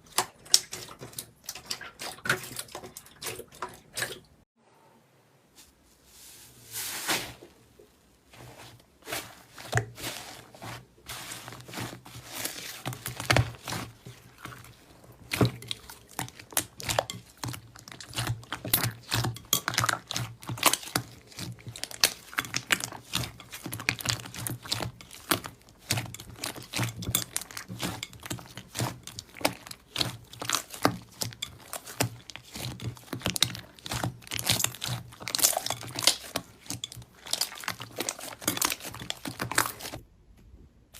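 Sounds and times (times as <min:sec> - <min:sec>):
slime crackling and popping: 0:15.2 - 0:40.0.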